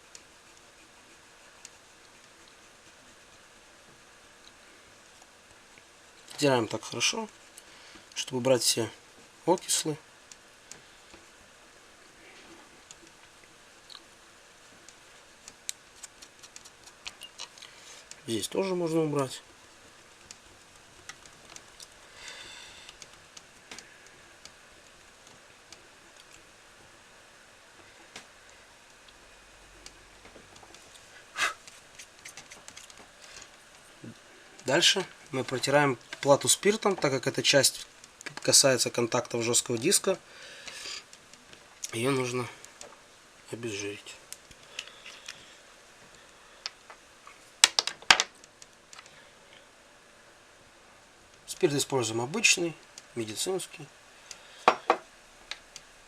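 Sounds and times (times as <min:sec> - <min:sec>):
eraser rubbing on circuit board: 0:00.0 - 0:03.5.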